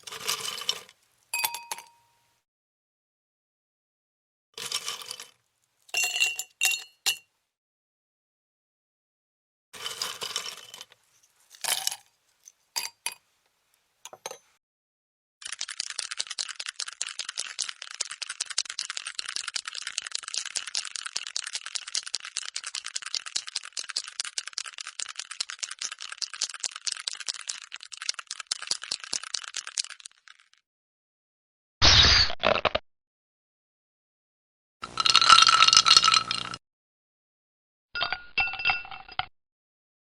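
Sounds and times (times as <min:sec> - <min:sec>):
ice cubes rattling against glass: 0:04.6 - 0:05.4, 0:09.8 - 0:10.9, 0:15.4 - 0:30.6, 0:34.8 - 0:36.6.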